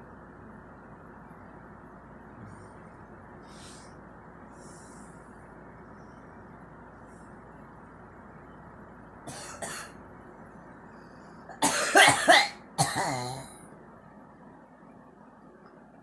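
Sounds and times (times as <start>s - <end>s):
girl coughing: 9.3s - 9.9s, 11.5s - 13.6s.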